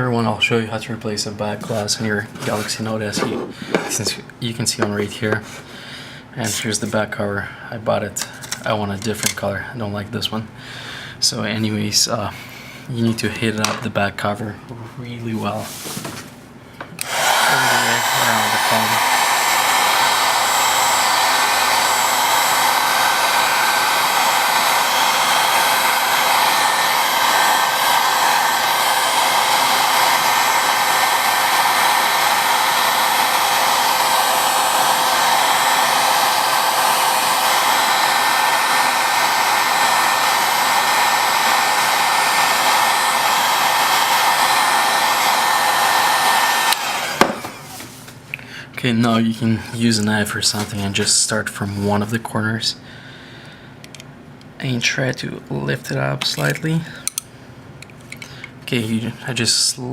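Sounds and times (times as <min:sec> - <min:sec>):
hot-air blower running: 0:01.4 - 0:06.8, 0:16.8 - 0:48.8.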